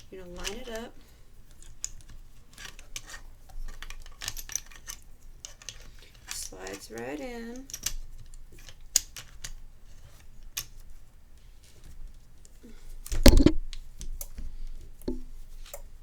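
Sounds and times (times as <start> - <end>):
light clicks and taps: 11.4 - 16.0.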